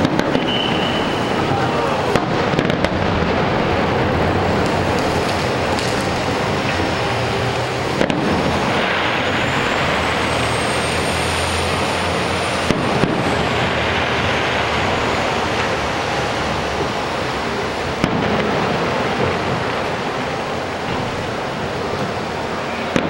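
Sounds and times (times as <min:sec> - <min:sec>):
high firework whistle: 0:00.0 - 0:02.2, 0:08.0 - 0:16.5, 0:22.6 - 0:23.0
fireworks bangs: 0:00.0 - 0:23.0
steady wash of noise: 0:00.0 - 0:23.0.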